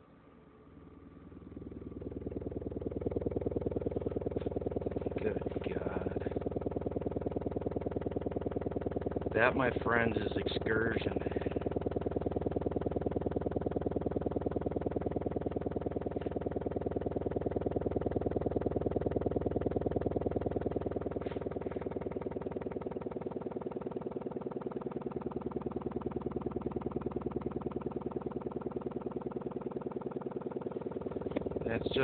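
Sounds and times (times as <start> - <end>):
subwoofer pulsing buzz: 0.0 - 32.0.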